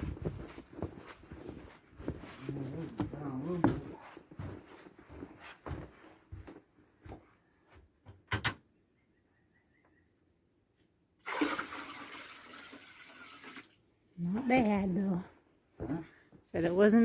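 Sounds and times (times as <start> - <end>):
water pouring: 11.2 - 13.8.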